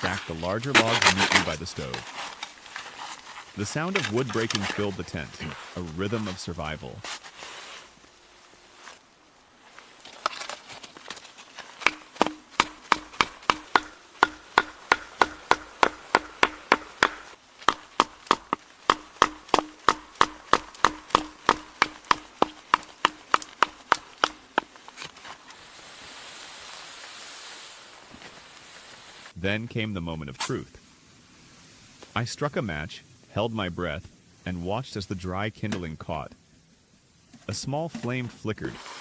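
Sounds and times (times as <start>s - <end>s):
axe chopping wood: 0.8s - 2.0s, 11.8s - 25.2s.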